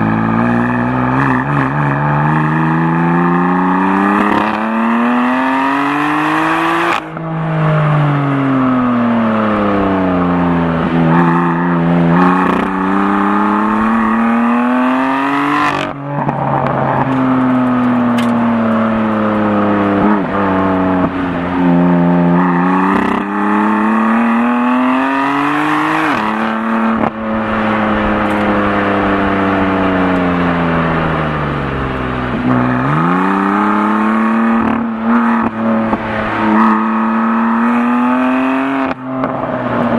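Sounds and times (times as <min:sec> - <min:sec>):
car engine accelerating and slowing: 0:00.0 - 0:39.9.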